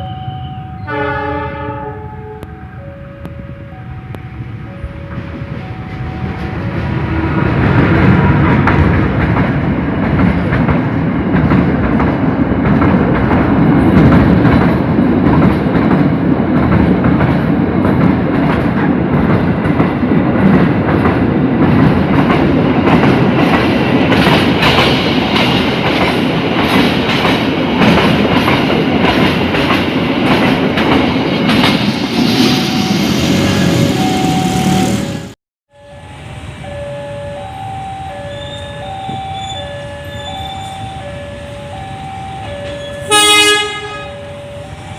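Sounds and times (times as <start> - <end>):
train wheels clattering on rails: 4.9 - 33.6.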